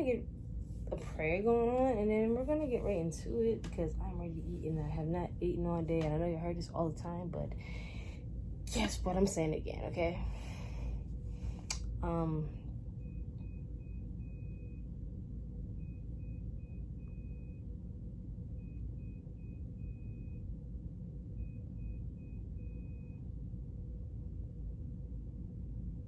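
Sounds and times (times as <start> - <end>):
low room hum: 0.0 - 26.0
faint electronic beeping: 12.9 - 23.5.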